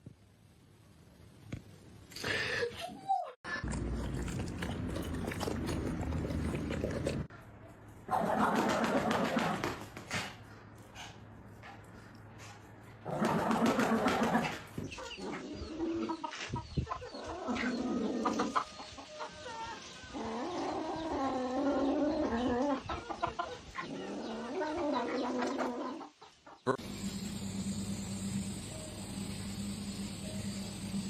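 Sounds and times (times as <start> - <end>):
bird clucking and calling: 13.2 - 26.8
steady low hum: 26.8 - 31.0.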